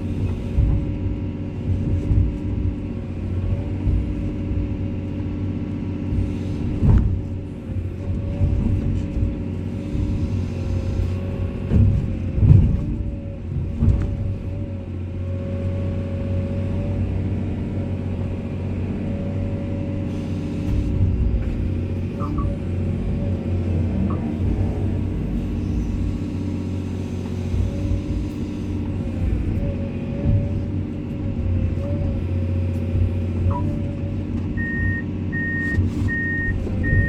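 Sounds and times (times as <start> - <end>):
excavator diesel engine running: 0.0 - 37.0
constant whine: 20.2 - 37.0.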